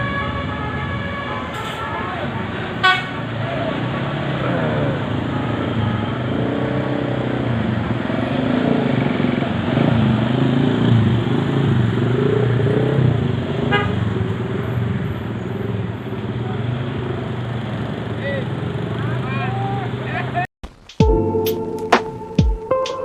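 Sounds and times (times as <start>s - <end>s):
high horn toot: 0.0s - 3.2s
vehicle engines running: 1.6s - 20.5s.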